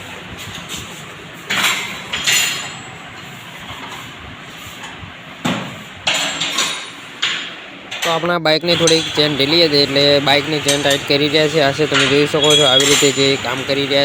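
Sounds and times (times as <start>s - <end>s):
workshop background: 0.0s - 14.0s
metal tools knocking: 6.0s - 14.0s.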